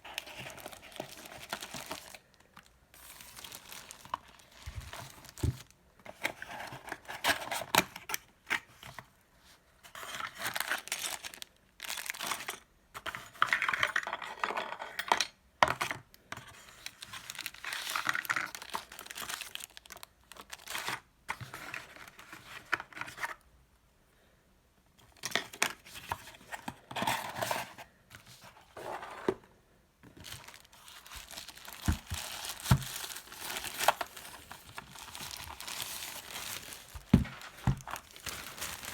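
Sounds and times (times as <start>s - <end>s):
packaging crinkling and tearing: 0.0s - 5.7s, 10.2s - 12.4s, 16.8s - 21.0s, 30.2s - 38.9s.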